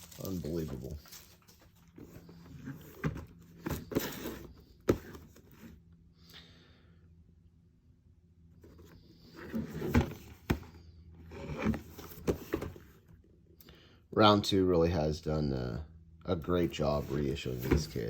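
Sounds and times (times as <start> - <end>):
cardboard box rustling and scraping: 0.0 - 5.8, 8.6 - 13.0, 16.6 - 18.0.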